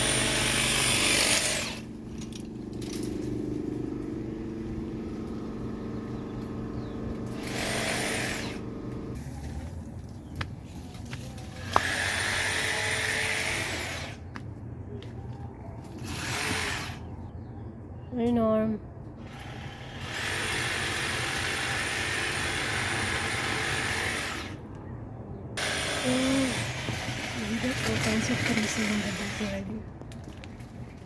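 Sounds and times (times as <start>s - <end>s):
power saw cutting: 0.0s - 5.8s, 6.4s - 9.2s, 11.6s - 14.2s, 19.2s - 24.6s, 25.6s - 29.7s.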